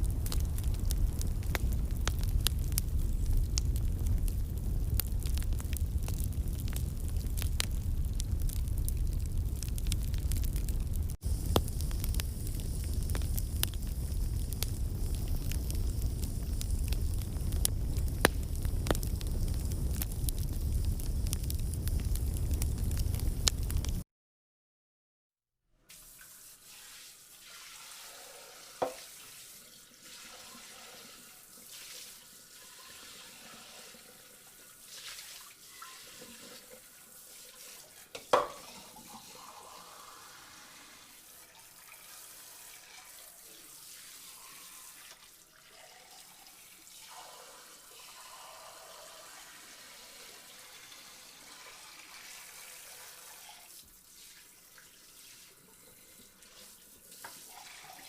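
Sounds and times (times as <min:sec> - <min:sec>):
tap water running into sink: 0:25.9 - 0:40.3.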